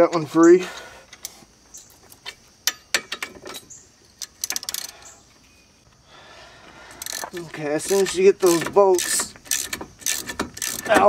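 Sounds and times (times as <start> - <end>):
metal clicks and clinks: 2.6 - 5.0, 7.0 - 11.0
wrench clicking on bolt: 4.2 - 4.9, 7.0 - 11.0.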